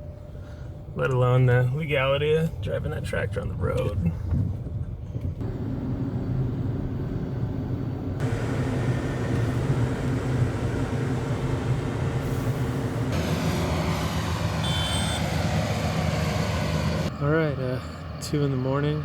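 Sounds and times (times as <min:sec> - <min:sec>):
vehicle engine droning: 0:05.4 - 0:19.0.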